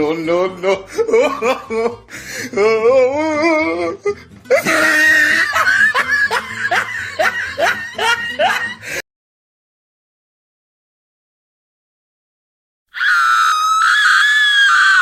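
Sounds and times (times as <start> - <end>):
person laughing hard: 0.6 - 9.0.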